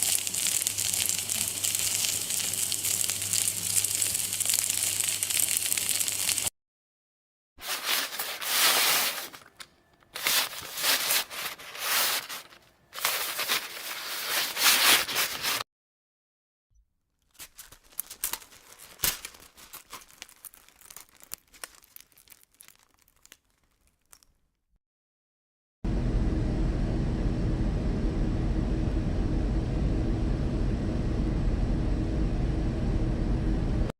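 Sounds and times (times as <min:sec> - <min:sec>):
dry rustling tearing noise: 0:00.0 - 0:06.5, 0:07.6 - 0:15.6, 0:17.2 - 0:24.5
crackling clicks: 0:17.3 - 0:24.5.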